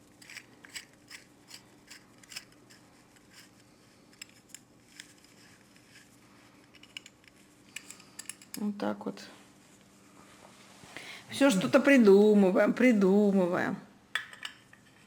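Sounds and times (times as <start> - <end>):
metal tools clicking and tapping: 6.8 - 8.6, 14.2 - 14.9.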